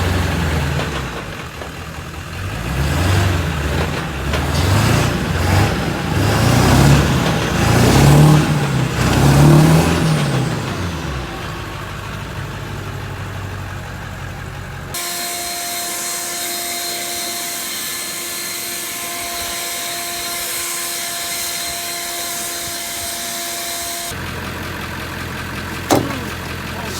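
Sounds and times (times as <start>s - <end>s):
diesel truck engine revving: 0.0s - 15.0s, 23.4s - 26.9s.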